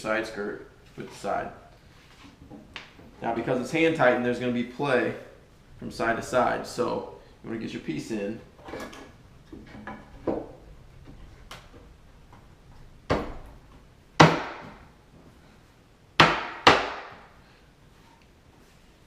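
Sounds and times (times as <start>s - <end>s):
hammer striking wood: 14.2s - 14.8s, 16.2s - 17.3s.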